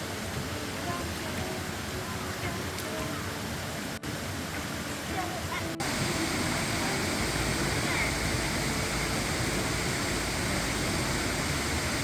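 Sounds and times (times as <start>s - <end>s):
stream rushing over rocks: 0.0s - 12.0s.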